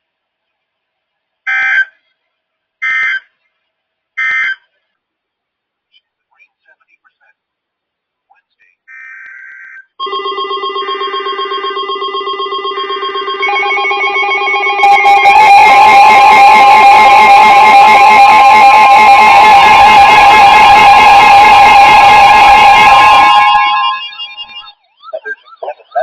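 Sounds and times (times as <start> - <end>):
weather radio alarms: 10.0 - 26.0.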